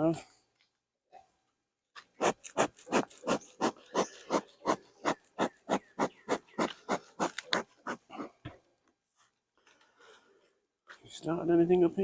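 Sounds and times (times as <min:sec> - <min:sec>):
bellows puffing air: 0:02.2 - 0:08.4.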